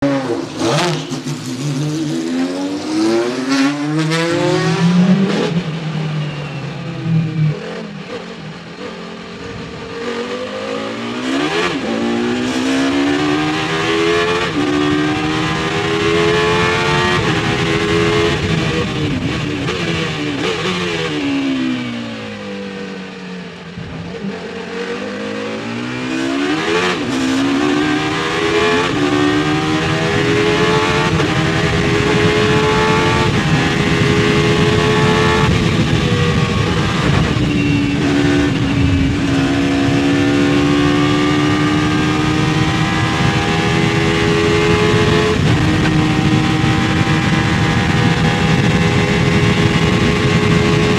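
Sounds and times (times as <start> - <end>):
racing engine accelerating: 0.0 - 50.9.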